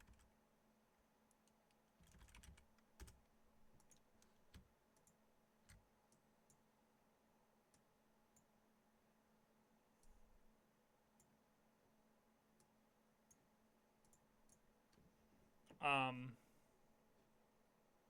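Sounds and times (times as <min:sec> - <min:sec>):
computer keyboard typing: 0:00.0 - 0:00.3, 0:02.0 - 0:03.2, 0:03.8 - 0:05.8
low room hum: 0:00.0 - 0:18.0.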